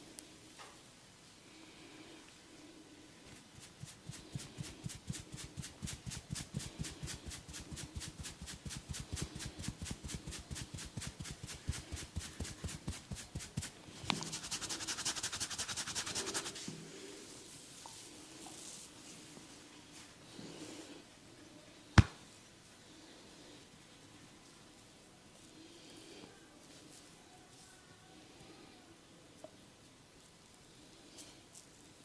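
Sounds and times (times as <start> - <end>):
hands rubbing hair: 3.3 - 16.8.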